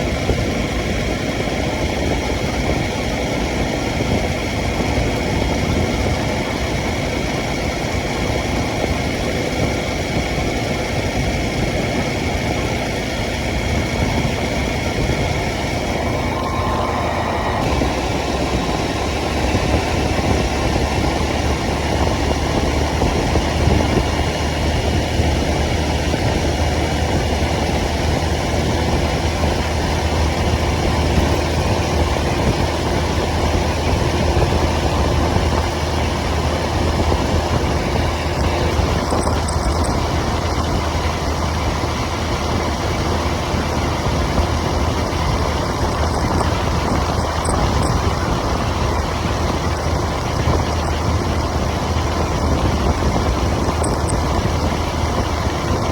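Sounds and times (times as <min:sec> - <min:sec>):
motorcycle engine running: 0:00.0 - 0:55.9
road and wind noise: 0:00.0 - 0:55.9.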